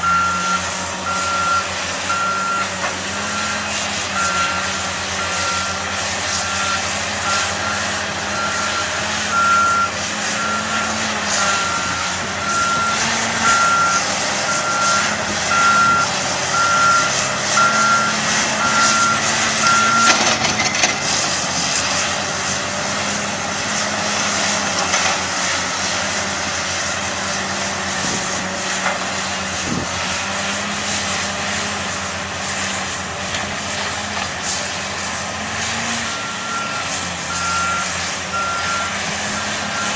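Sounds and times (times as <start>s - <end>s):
backup alarm beeping: 0.0s - 2.7s, 6.5s - 20.4s
diesel engine running under load: 0.0s - 39.9s.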